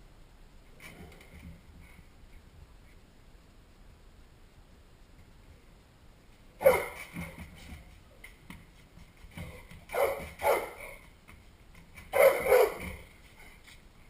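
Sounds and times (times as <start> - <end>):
dog barking: 6.6 - 7.0, 9.9 - 11.0, 12.1 - 13.0.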